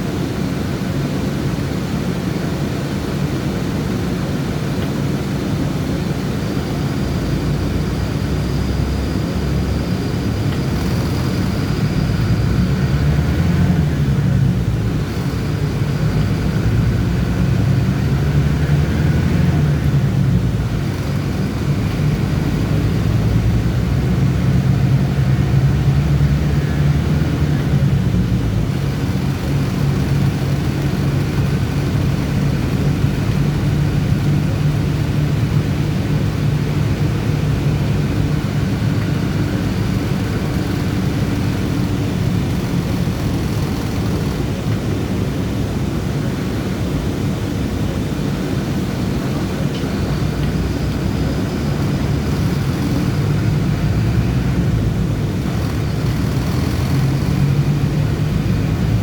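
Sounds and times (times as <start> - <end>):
bus engine drone: 0.0 - 59.0
road noise: 0.0 - 59.0.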